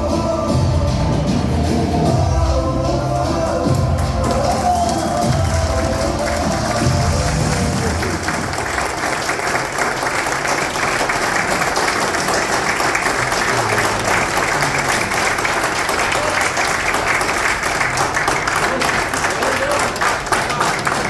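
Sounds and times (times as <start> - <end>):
audience applauding: 4.1 - 21.0
voices: 13.1 - 16.8.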